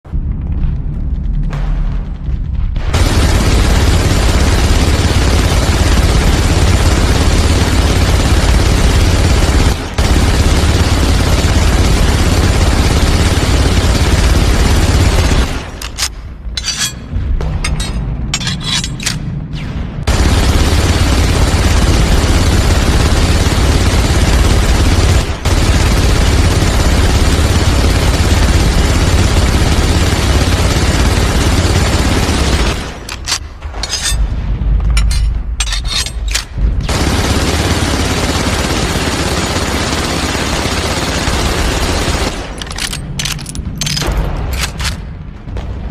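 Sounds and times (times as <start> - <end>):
low rumble: 0.0 - 45.9
machine gun firing bursts: 2.9 - 16.1, 20.1 - 34.2, 35.9 - 45.1
sharp metal clinks: 16.6 - 19.2.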